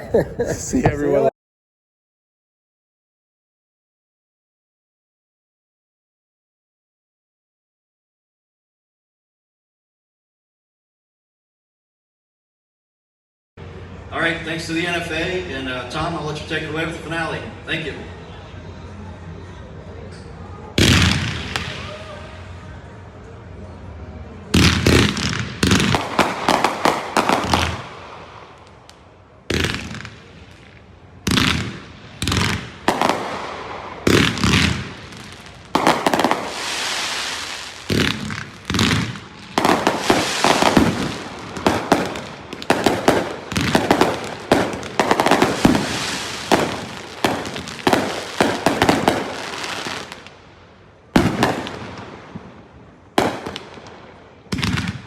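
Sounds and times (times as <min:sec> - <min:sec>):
firework shells bursting: 0:31.3 - 0:50.2.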